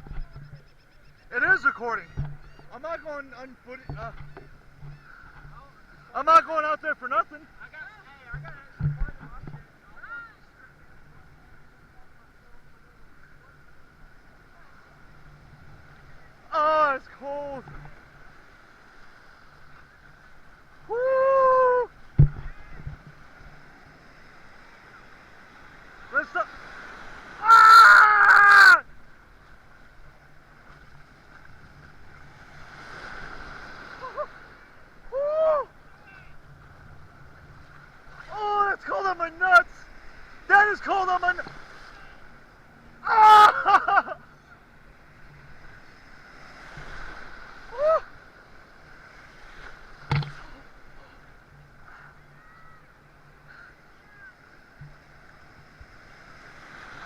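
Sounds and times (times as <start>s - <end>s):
ocean surf washing: 0.0s - 57.0s
short vocal cries: 20.9s - 21.9s, 27.4s - 28.8s, 43.0s - 44.0s.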